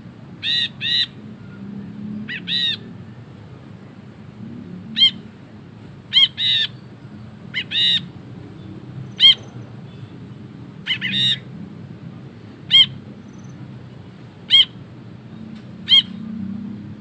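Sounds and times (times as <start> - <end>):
bulbul ringing calls: 5.0 - 5.2, 6.1 - 6.9, 7.5 - 10.1, 10.8 - 11.5, 12.7 - 13.6, 14.5 - 14.8, 15.4 - 16.3.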